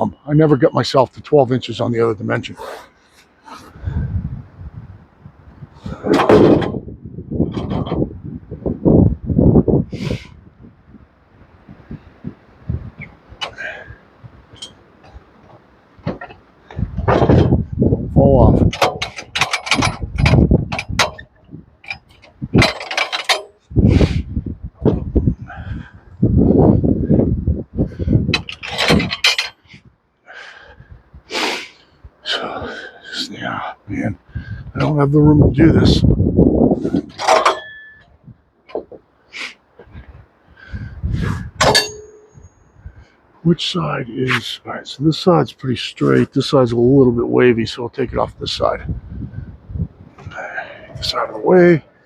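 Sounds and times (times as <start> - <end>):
metal parts clanking: 5.8 - 6.8, 7.5 - 8.0, 13.1 - 13.9, 14.5 - 17.6, 18.5 - 23.6, 28.3 - 29.8, 36.8 - 39.0, 41.6 - 42.8
boards and hardware knocking: 6.1 - 6.8, 15.0 - 17.6, 38.7 - 39.1.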